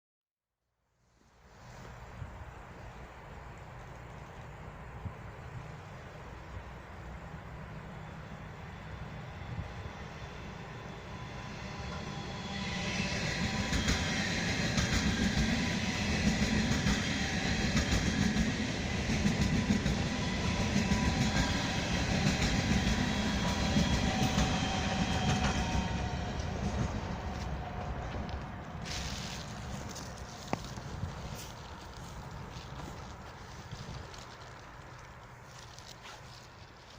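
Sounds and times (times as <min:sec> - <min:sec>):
train wheels clicking over rail joints: 0:13.0 - 0:32.0.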